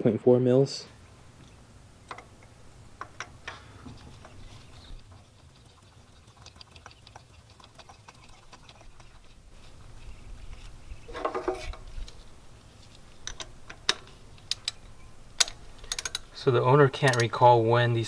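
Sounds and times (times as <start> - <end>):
metallic clicks of hand tools: 15.4 - 16.3, 17.0 - 17.4.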